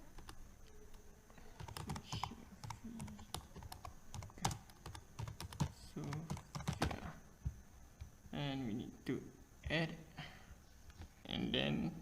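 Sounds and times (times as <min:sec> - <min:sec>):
keyboard typing: 0:00.0 - 0:07.1.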